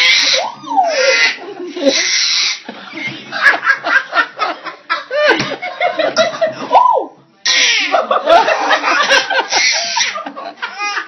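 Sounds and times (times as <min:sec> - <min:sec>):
baby squealing and laughing: 0:00.0 - 0:02.6, 0:07.4 - 0:08.0, 0:09.5 - 0:10.2.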